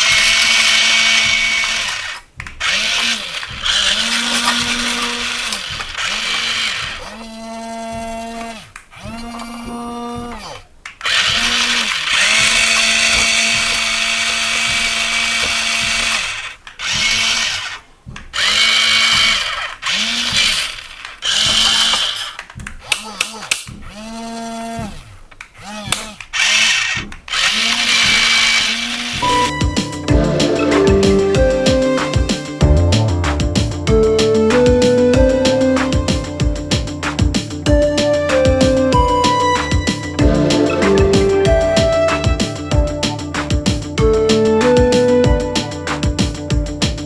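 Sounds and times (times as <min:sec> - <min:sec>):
toy car motor whirring: 0:00.0 - 0:29.2.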